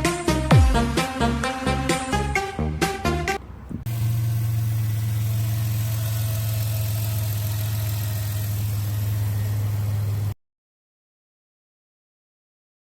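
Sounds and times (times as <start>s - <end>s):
car engine idling: 1.6s - 10.3s.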